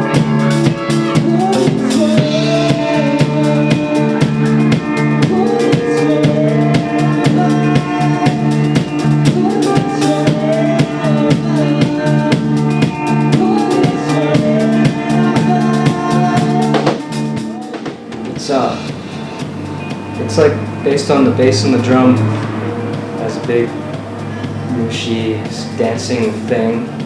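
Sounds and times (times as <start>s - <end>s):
wavering guitar melody: 0.0s - 27.0s
drum beat: 17.7s - 27.0s
sustained bass notes: 18.1s - 27.0s.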